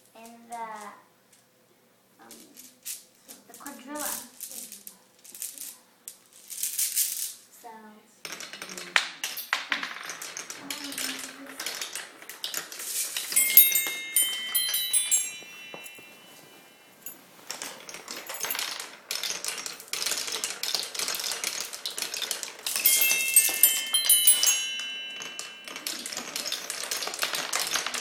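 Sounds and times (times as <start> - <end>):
marbles clattering through wooden run: 8.3 - 16.0, 17.5 - 28.0
ringing chime-like notes: 13.3 - 17.2, 22.7 - 28.0.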